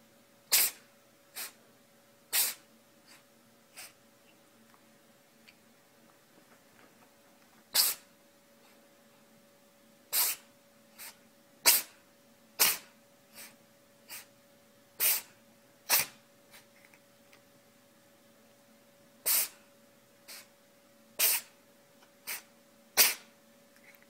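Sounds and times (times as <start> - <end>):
animal sneezing: 0.5 - 1.6, 2.3 - 4.0, 7.7 - 8.1, 10.1 - 12.0, 12.6 - 14.3, 15.0 - 16.7, 19.2 - 19.6, 20.3 - 20.5, 21.2 - 21.6, 22.2 - 23.3.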